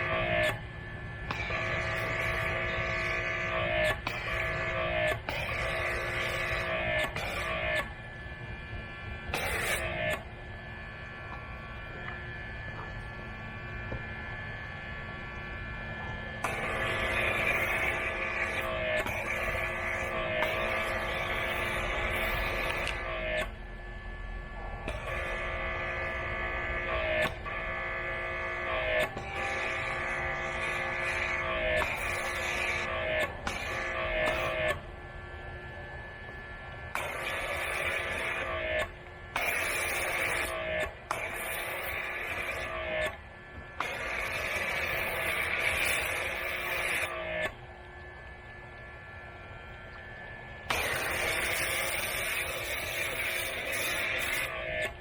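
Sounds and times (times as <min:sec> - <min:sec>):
pressure washer whining: 0:00.0 - 0:00.6, 0:01.2 - 0:55.0
faint steady hum: 0:00.0 - 0:55.0.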